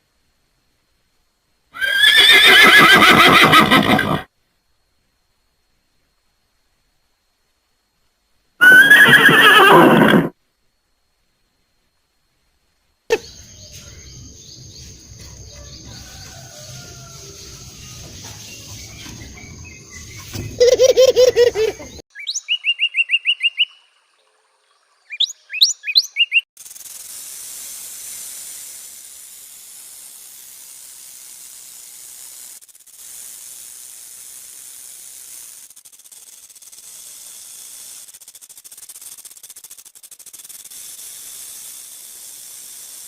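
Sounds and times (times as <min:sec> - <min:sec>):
long steady hiss: 0:00.0 - 0:22.0, 0:26.6 - 0:43.0
high bird chirps: 0:17.4 - 0:24.0, 0:25.0 - 0:26.5.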